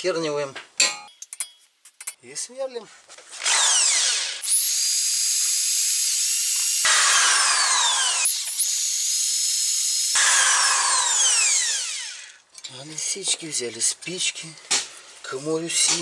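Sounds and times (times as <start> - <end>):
electric drill boring into metal: 3.5 - 12.4.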